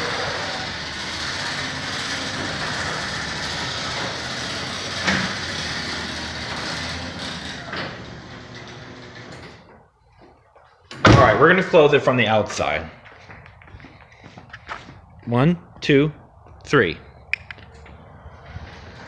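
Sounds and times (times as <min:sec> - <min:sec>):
garage door motor rumble: 0:00.0 - 0:09.9.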